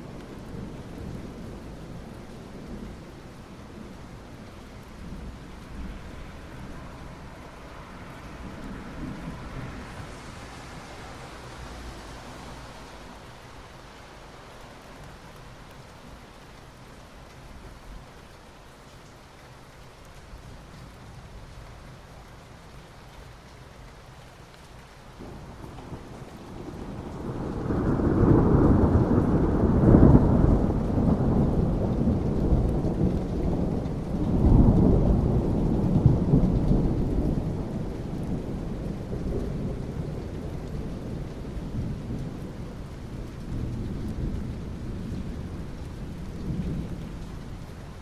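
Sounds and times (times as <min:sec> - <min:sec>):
steady rain: 0:00.0 - 0:48.0
rolling thunder: 0:25.2 - 0:47.7.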